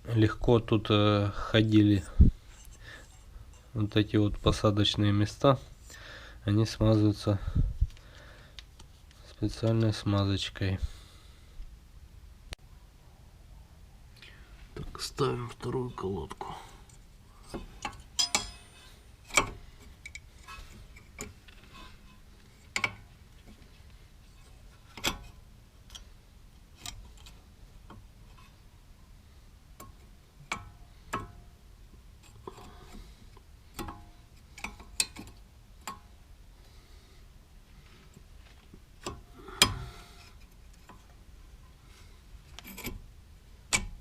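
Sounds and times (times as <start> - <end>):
metallic clicks and clinks: 17.8 - 20.3.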